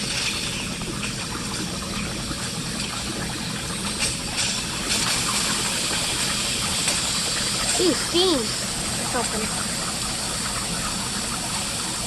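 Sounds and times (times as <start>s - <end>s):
water gushing from drain: 0.0s - 12.0s.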